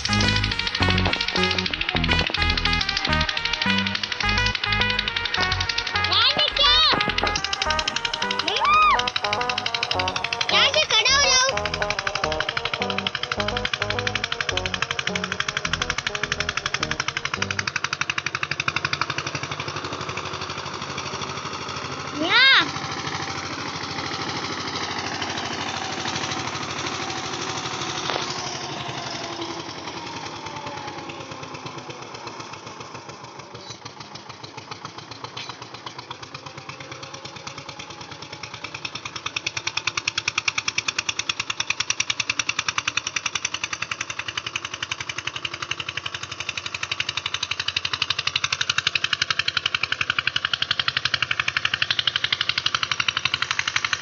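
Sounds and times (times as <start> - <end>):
tractor diesel engine running: 0.0 - 22.1.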